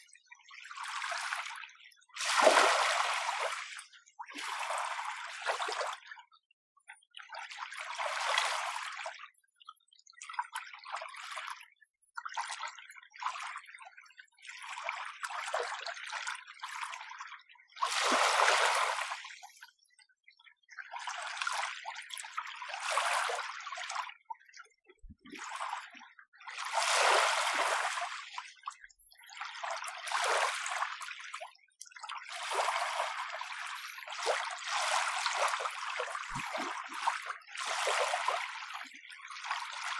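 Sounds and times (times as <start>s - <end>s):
gentle waves lapping at shore: 0.4s - 6.0s, 17.8s - 19.5s, 24.6s - 31.0s, 32.3s - 39.9s.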